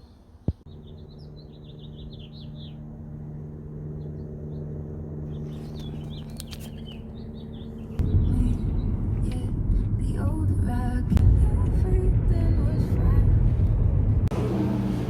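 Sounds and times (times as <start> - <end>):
small birds chirping: 0.0 - 9.0
steady low hum: 0.0 - 15.0.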